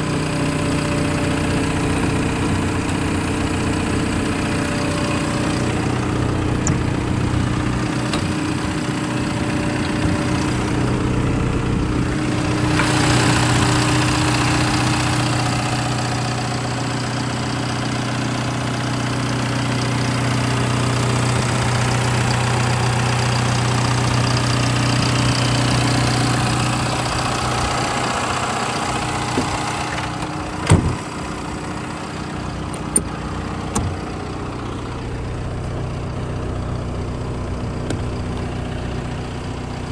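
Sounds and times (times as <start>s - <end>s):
excavator diesel engine running: 0.0s - 39.9s
sharp clunk: 29.3s - 31.2s.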